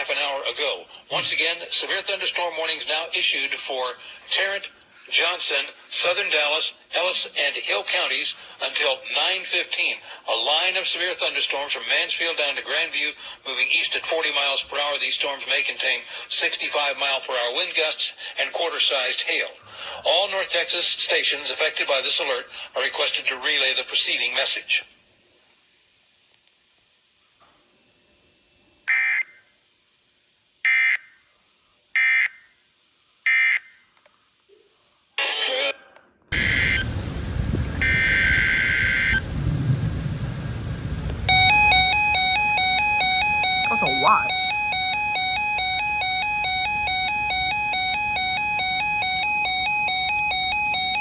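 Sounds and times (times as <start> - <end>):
buzzy digital data bursts: 36.3 - 37.0, 37.8 - 39.3, 41.2 - 47.0
two-pitch electronic alert warble: 41.3 - 51.0.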